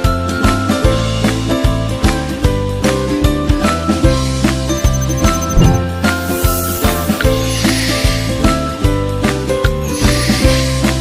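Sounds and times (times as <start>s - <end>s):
upbeat instrumental music: 4.2s - 7.4s.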